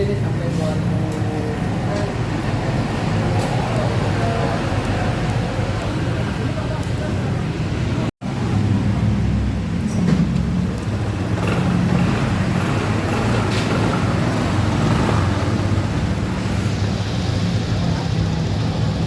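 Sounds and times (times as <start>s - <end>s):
scooter engine running: 8.3s - 19.0s.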